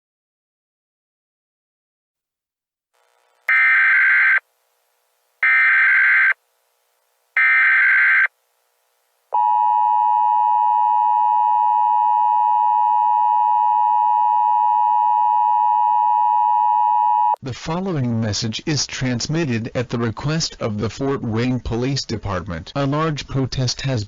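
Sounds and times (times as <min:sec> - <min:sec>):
steady attention tone: 0:03.0 - 0:11.7
warbling digital data bursts: 0:03.5 - 0:04.4, 0:05.4 - 0:06.4.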